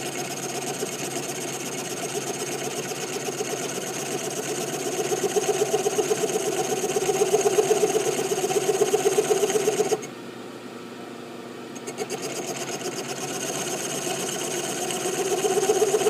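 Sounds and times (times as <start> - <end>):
milling machine cutting steel: 11.8 - 16.0.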